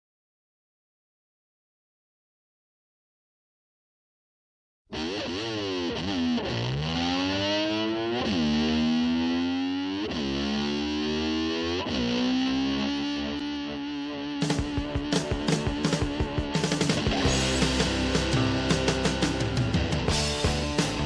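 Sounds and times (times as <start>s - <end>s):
distorted slide guitar: 4.9s - 21.0s.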